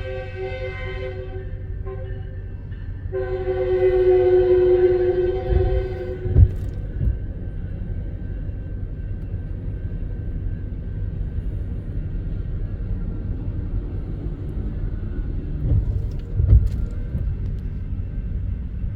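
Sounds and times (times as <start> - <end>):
train rolling past: 0.0 - 18.9
heavy thumps: 5.4 - 7.3.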